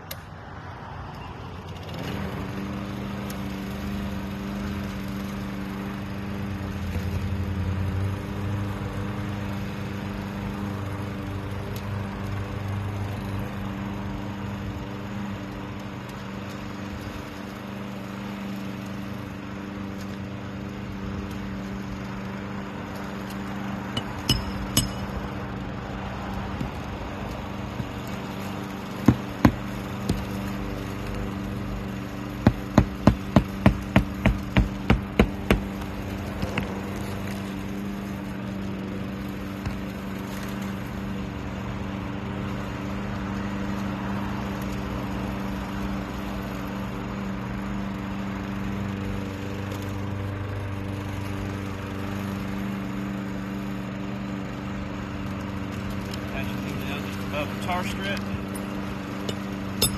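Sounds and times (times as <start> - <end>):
steady mechanical hum: 0.0 - 59.9
hammer striking roofing nails: 24.0 - 25.2, 29.0 - 30.3, 32.4 - 36.8.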